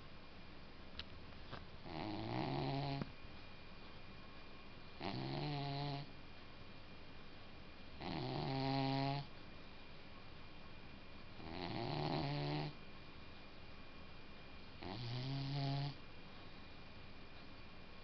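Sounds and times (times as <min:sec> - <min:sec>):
pet snoring: 0:01.8 - 0:03.1, 0:05.0 - 0:06.1, 0:08.0 - 0:09.3, 0:11.4 - 0:12.8, 0:14.8 - 0:16.0.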